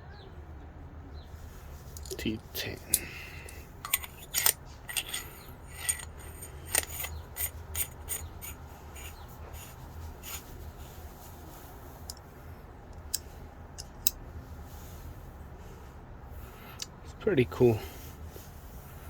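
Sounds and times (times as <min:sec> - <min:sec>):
screwdriver bits clicking and scraping: 0:01.9 - 0:10.5, 0:13.0 - 0:14.2.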